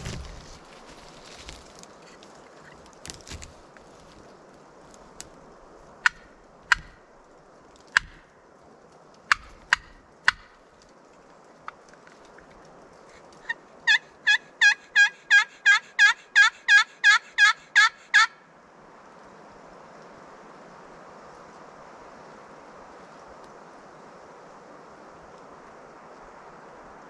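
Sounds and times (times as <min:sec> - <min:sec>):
turkey clucking and yelping: 0:09.3 - 0:10.5, 0:13.4 - 0:18.4.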